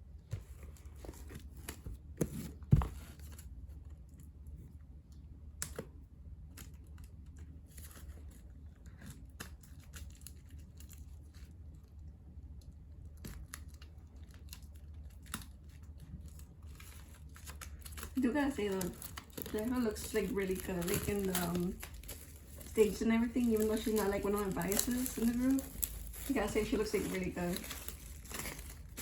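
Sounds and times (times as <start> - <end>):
plastic wrap crinkling: 13.1 - 29.0.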